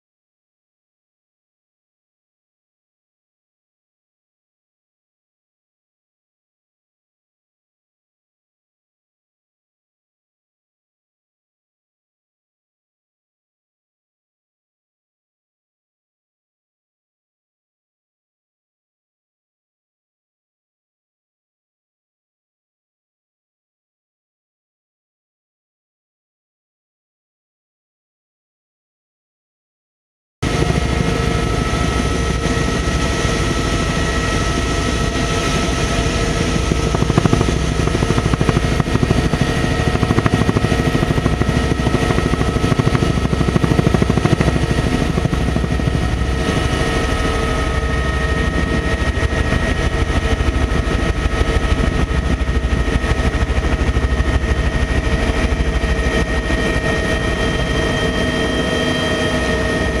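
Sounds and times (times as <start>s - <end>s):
helicopter engine whine: 30.4s - 60.0s
helicopter rotor beating: 30.4s - 60.0s.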